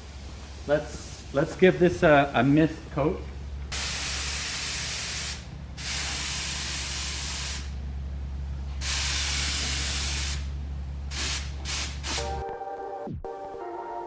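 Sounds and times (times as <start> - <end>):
steady low hum: 0.0 - 12.5
paint spray gun hissing: 3.7 - 7.8, 8.8 - 10.5, 11.1 - 12.4.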